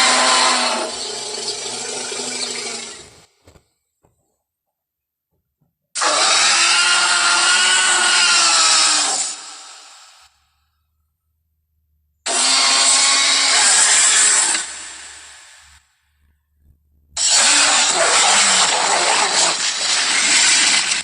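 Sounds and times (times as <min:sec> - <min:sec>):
dinosaur roar: 0:00.0 - 0:03.0, 0:06.0 - 0:09.5, 0:12.3 - 0:15.5, 0:17.2 - 0:21.0.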